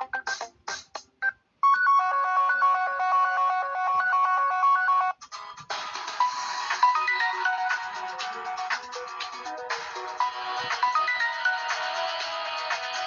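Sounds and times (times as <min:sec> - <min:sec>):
melodic electronic phone tone: 0:01.6 - 0:05.1.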